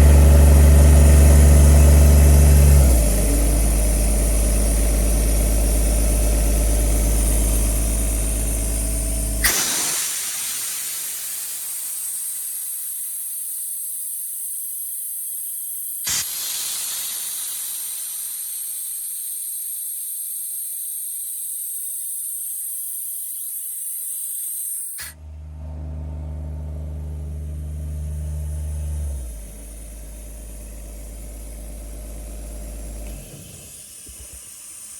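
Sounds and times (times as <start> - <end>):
diesel compressor engine running: 0.0 - 9.6, 25.0 - 34.9
engine stopping with a click: 0.0 - 11.1, 24.4 - 34.9
air hissing: 1.0 - 25.2, 28.6 - 34.9.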